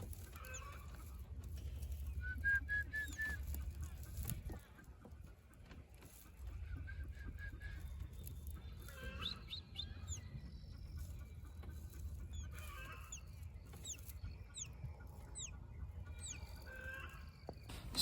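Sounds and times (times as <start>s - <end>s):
chick peeping: 0.0s - 18.0s
person whistling softly: 2.2s - 3.6s.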